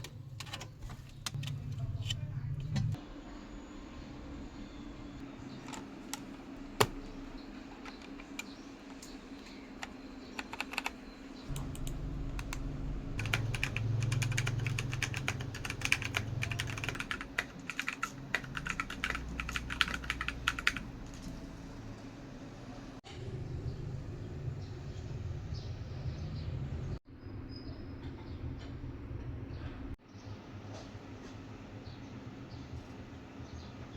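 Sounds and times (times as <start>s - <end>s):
mechanical keyboard typing: 9.8s - 20.9s.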